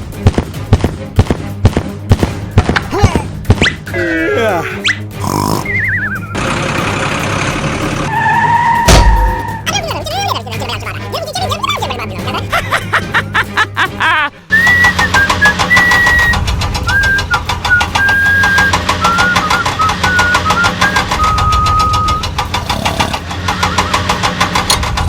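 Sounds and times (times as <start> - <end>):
small engine running: 6.3 - 8.1, 14.9 - 25.0.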